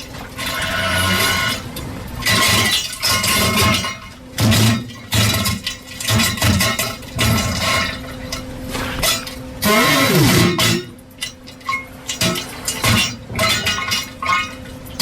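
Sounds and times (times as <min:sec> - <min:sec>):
distorted diarrhea sound effect: 0:09.6 - 0:10.6.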